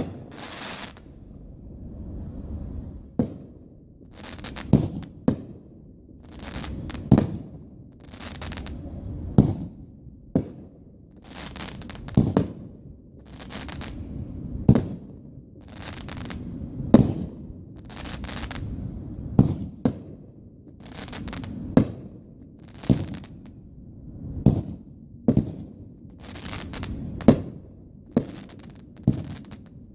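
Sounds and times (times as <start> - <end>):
fireworks sharp bangs: 0.0 - 1.0, 3.1 - 9.8, 11.2 - 18.7, 24.4 - 29.7
fireworks crackling: 0.0 - 1.2, 2.1 - 9.8, 10.4 - 23.5, 24.3 - 29.8
steady hiss: 0.0 - 29.9.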